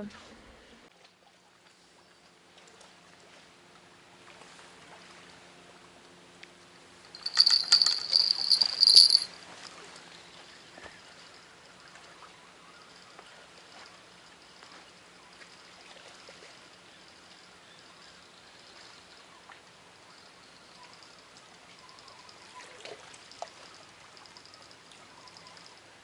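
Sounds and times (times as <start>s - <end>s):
faint background noise: 7.0s - 9.4s
high jingling rattle: 7.0s - 9.4s, 20.8s - 22.6s, 23.3s - 25.9s.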